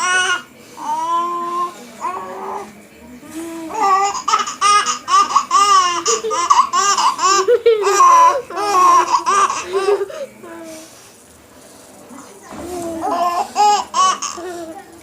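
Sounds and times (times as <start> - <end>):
baby laughing: 3.7 - 10.3, 12.8 - 14.8.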